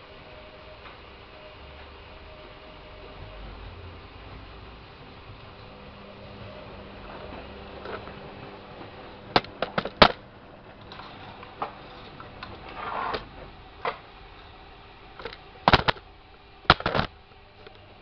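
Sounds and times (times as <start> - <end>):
washing machine motor humming: 0.0 - 18.0
drum clicks and knocks: 9.3 - 10.2, 15.2 - 16.0, 16.7 - 17.1.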